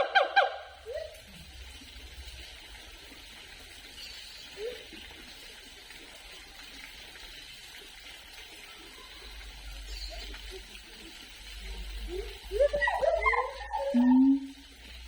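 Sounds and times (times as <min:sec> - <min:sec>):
outdoor background hiss: 0:00.0 - 0:15.0.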